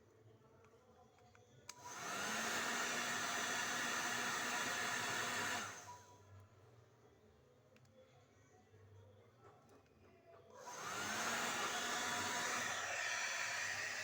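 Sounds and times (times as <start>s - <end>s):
hair dryer motor blowing: 1.7s - 6.1s, 10.6s - 14.0s.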